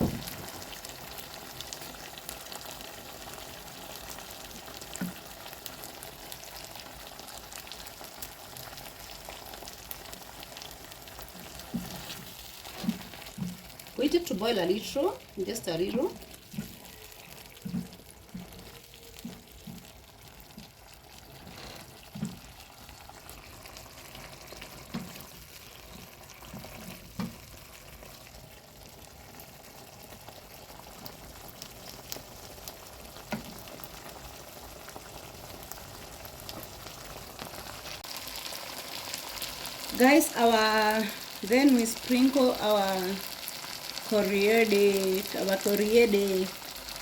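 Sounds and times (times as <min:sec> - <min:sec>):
gravy simmering in a pan: 0:00.0 - 0:47.0.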